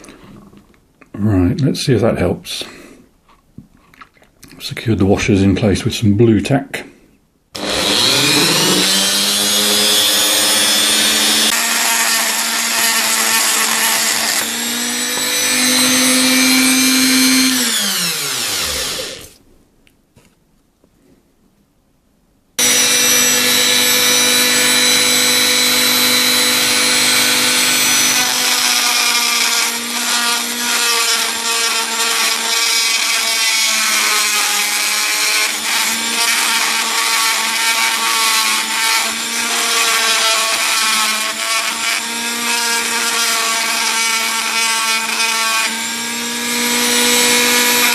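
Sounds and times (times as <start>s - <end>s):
rotary tool whining: 7.6s - 19.4s, 22.6s - 47.9s.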